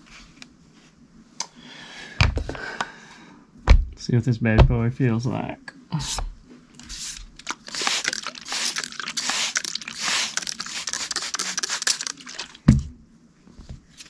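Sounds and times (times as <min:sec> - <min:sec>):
heavy thump: 0:03.7 - 0:04.0, 0:04.6 - 0:04.9, 0:12.7 - 0:13.0.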